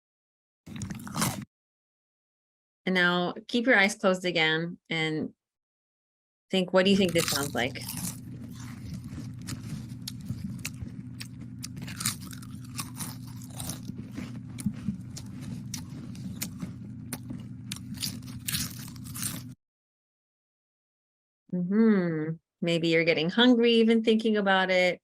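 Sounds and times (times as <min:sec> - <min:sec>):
person munching potato chips: 0:00.7 - 0:01.5, 0:07.0 - 0:19.6
low steady hum: 0:06.5 - 0:19.6.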